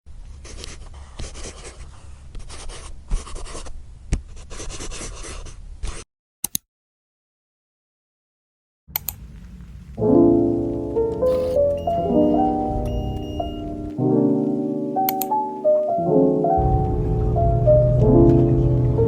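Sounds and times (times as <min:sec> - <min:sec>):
pen scratching on paper: 0:00.4 - 0:03.7, 0:04.3 - 0:06.0, 0:11.3 - 0:11.6
short clicks: 0:06.4 - 0:06.6, 0:15.1 - 0:15.4.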